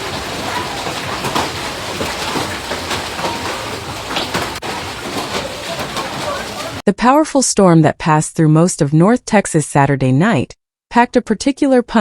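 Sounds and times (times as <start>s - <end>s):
heavy rain hiss: 0.0s - 6.8s
rushing floodwater: 0.0s - 6.8s.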